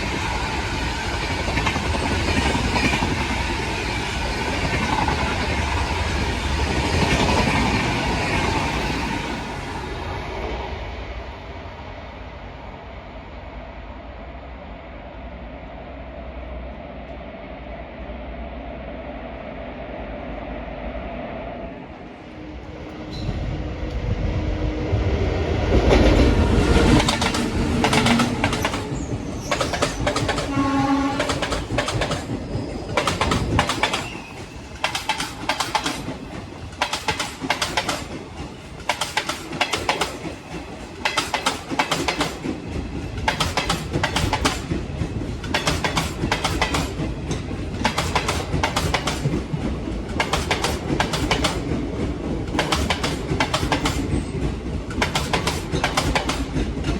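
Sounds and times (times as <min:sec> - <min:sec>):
train wheels clickety-clack: 0:00.0 - 0:09.7, 0:24.9 - 0:56.9
locomotive rumble: 0:22.0 - 0:56.9.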